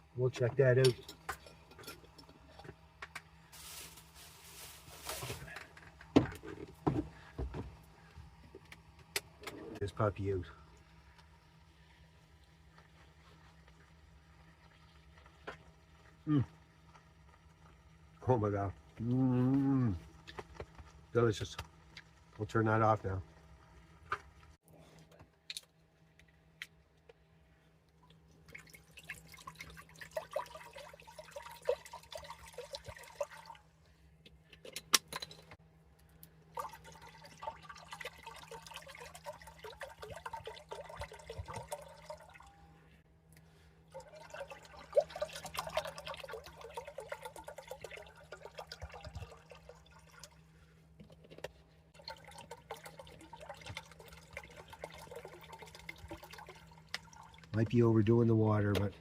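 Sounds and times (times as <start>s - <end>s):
water pouring into container: 28.4s - 33.6s, 36.5s - 42.5s, 43.9s - 50.5s, 52.0s - 57.8s.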